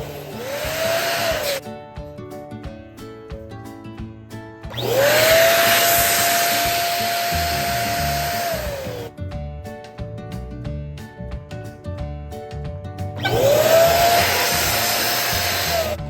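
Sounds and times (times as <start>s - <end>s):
electric balloon pump blowing air: 0.0s - 1.6s, 4.7s - 9.1s, 13.2s - 16.0s.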